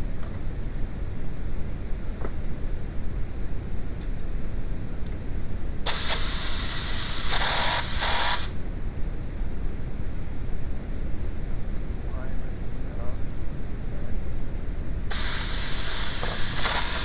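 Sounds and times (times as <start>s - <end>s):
pressurised spray hissing: 5.9s - 8.5s, 15.1s - 17.0s.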